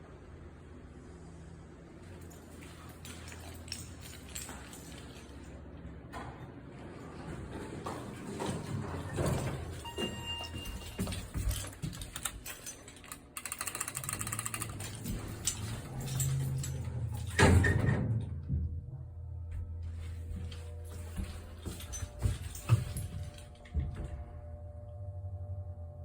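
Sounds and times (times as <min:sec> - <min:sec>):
elevator doors clattering: 0:06.8 - 0:18.5
low steady hum: 0:08.8 - 0:26.0.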